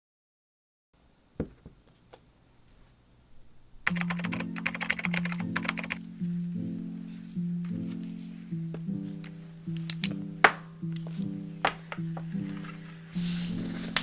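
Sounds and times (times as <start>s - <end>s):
background music with low notes: 3.3s - 14.0s
keyboard typing clicks: 3.9s - 6.0s.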